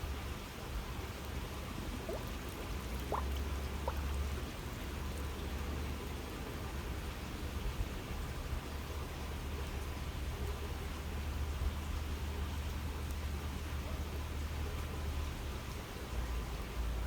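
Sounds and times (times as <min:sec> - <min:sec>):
water trickling and babbling: 0:00.0 - 0:17.0
water drops plinking: 0:03.0 - 0:04.0.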